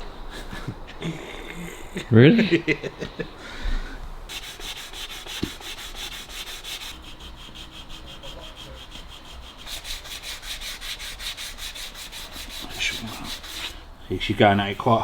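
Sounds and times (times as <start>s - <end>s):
sandpaper rubbing back and forth: 4.3s - 15.0s.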